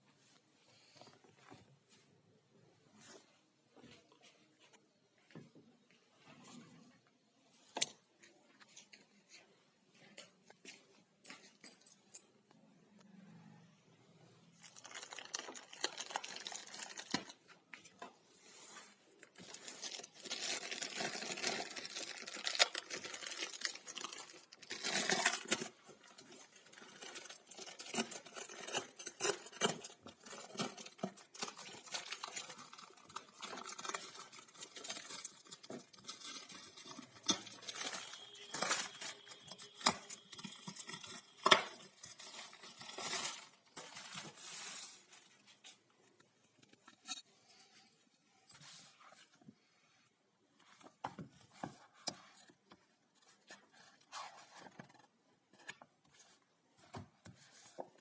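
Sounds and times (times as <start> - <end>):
packaging rustling and tearing: 14.6 - 17.4, 19.2 - 45.6.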